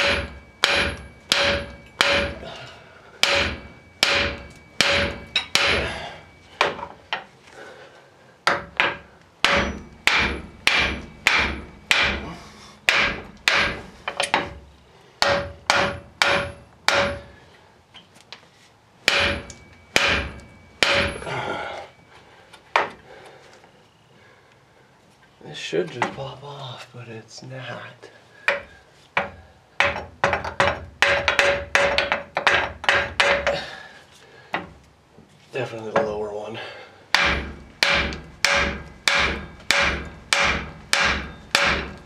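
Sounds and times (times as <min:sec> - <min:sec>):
hammer striking metal: 0:00.0 - 0:02.6, 0:03.2 - 0:07.3, 0:08.4 - 0:14.6, 0:15.2 - 0:17.4, 0:19.0 - 0:21.4, 0:28.5 - 0:33.6, 0:37.1 - 0:42.0.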